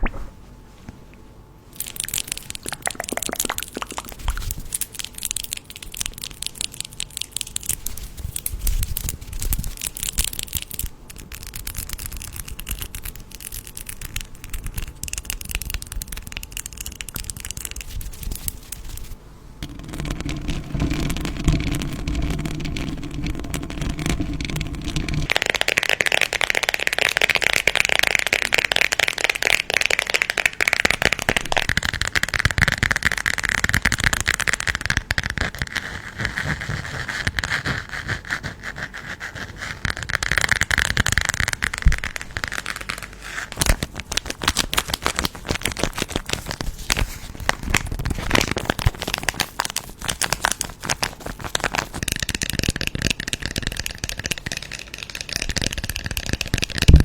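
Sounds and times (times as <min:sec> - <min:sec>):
wrappers crinkling and rattling: 0:39.8 - 0:57.0.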